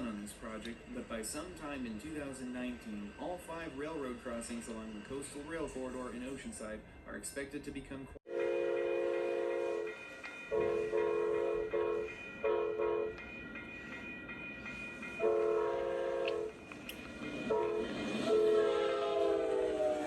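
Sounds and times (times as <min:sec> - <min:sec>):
train rumble: 0:00.0 - 0:20.0
locomotive air horn blasts: 0:08.3 - 0:09.9, 0:10.5 - 0:13.1, 0:15.2 - 0:16.5, 0:17.5 - 0:20.0.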